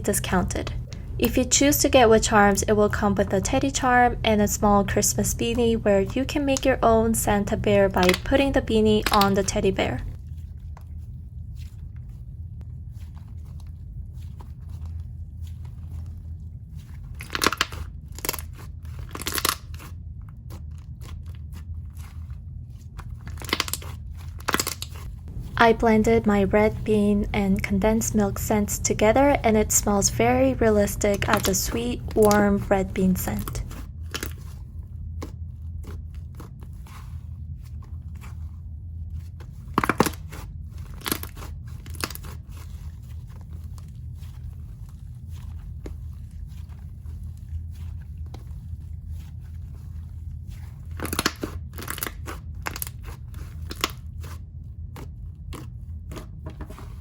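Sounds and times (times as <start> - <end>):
air pockets crackling and popping: 0.0 - 10.2, 16.8 - 37.0, 39.3 - 49.4, 50.5 - 57.0
low hum: 0.0 - 17.2, 25.0 - 35.8
slime squishing: 0.0 - 57.0.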